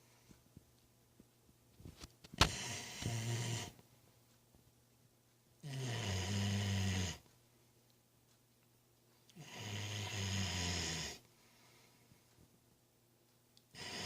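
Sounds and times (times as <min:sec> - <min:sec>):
long low snores: 0:02.5 - 0:03.8, 0:05.6 - 0:07.2, 0:09.4 - 0:11.2, 0:13.7 - 0:14.0.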